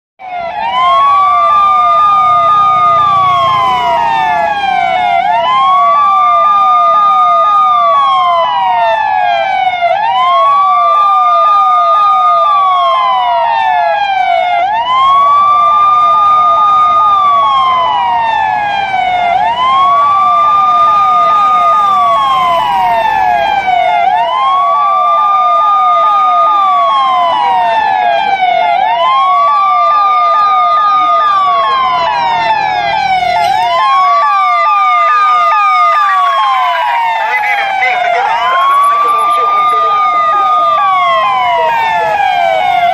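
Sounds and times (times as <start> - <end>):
police siren wailing: 0.2 - 42.9
short falling siren sweeps: 29.2 - 42.9.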